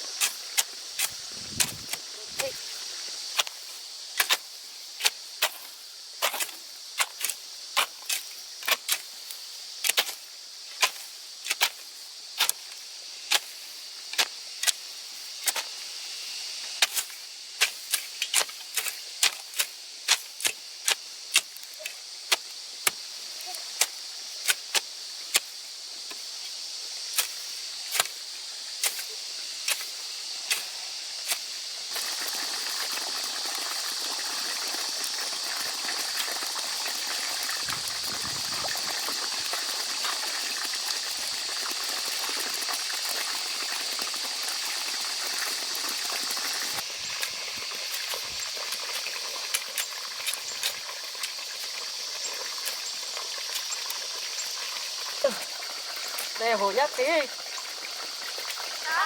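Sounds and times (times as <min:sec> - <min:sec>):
steady high hiss: 0:00.0 - 0:32.9.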